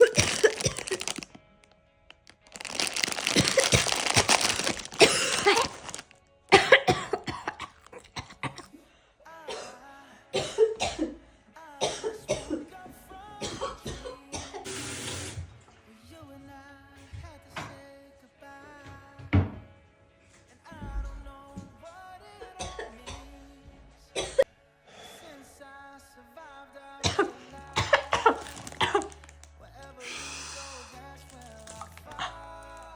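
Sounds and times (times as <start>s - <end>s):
woman coughing: 0.0s - 1.2s, 3.2s - 8.7s, 9.5s - 9.8s, 10.4s - 11.2s, 11.8s - 12.7s, 13.4s - 14.7s, 22.6s - 23.2s, 24.2s - 24.5s, 27.0s - 29.2s
background music: 0.0s - 32.9s.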